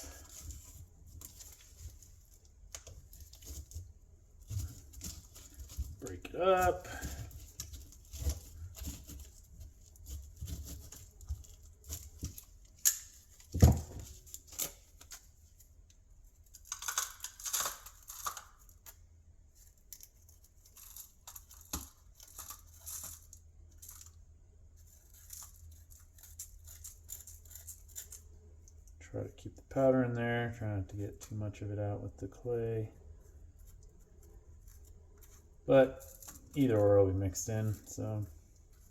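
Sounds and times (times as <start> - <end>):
cardboard casing tearing and crinkling: 0.0 - 15.6, 16.4 - 19.0, 19.6 - 24.2, 24.8 - 28.3.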